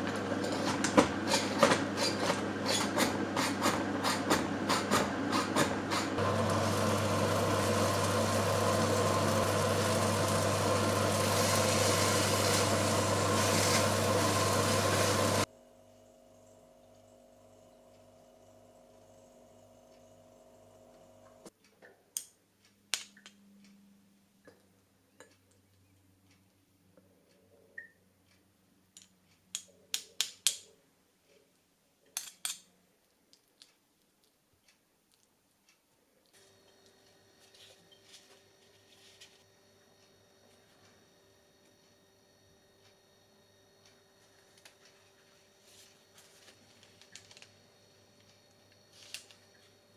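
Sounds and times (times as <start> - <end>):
kitchen appliance humming and whirring: 0.0 - 21.5, 36.3 - 49.9.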